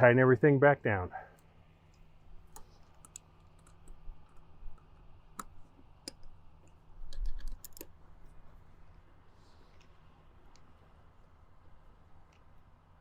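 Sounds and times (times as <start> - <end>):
hand tool and plastic clicks: 1.9 - 8.0.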